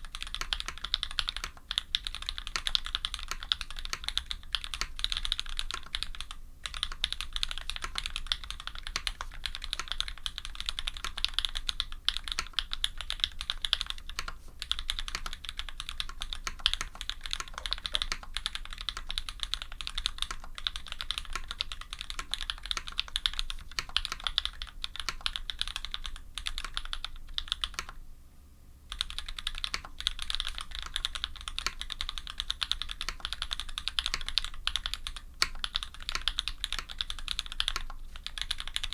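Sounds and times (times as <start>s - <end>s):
fast mechanical keyboard typing: 0.0s - 28.0s, 28.9s - 38.9s.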